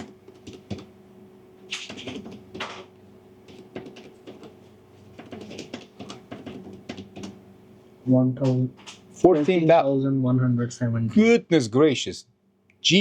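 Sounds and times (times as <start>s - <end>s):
keys tapping clicks: 0.0s - 0.9s, 5.2s - 7.4s.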